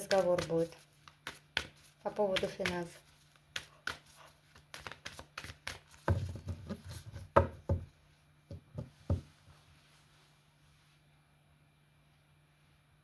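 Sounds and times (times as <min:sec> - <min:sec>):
cards clicking and tapping: 0:00.0 - 0:07.9.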